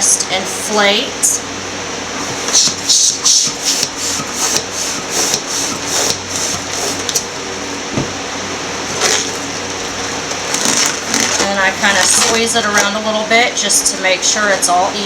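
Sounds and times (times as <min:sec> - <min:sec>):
balloon pump air puffs: 0:02.4 - 0:07.2.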